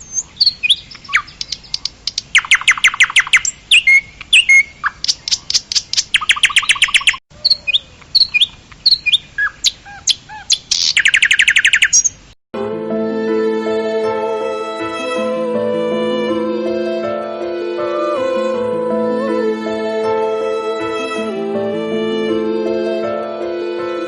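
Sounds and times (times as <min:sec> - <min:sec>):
bird chirps and whistles: 0:00.0 - 0:01.8, 0:02.4 - 0:12.1
songbirds trilling: 0:00.0 - 0:12.2.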